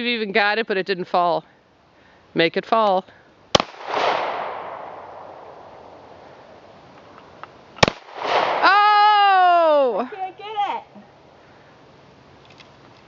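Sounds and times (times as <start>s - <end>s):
pistol shots with echo: 3.6s - 5.9s, 7.8s - 8.7s.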